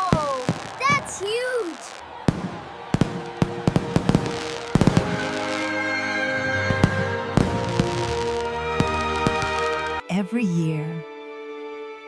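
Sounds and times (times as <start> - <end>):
fireworks bangs and crackles: 0.0 - 10.0
gentle background music: 3.3 - 12.0.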